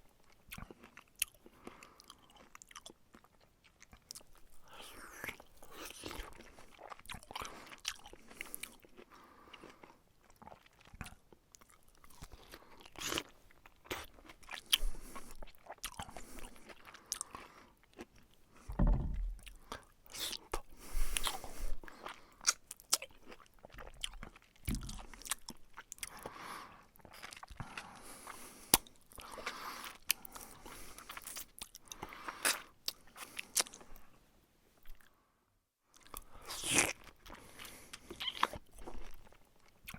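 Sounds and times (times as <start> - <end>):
person chewing food: 0.1 - 34.2, 34.8 - 35.2, 35.9 - 39.9
low knocks: 18.7 - 19.5.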